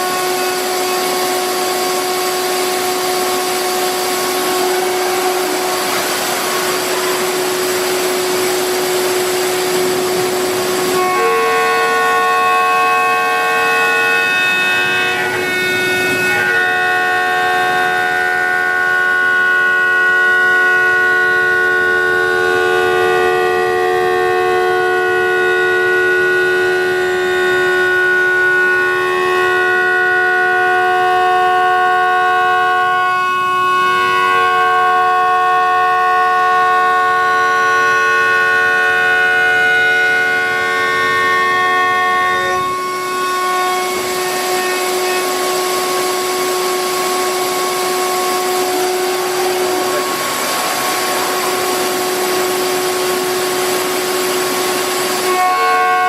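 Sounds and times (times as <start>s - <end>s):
router spindle milling wood: 0.0s - 18.6s, 41.6s - 56.0s.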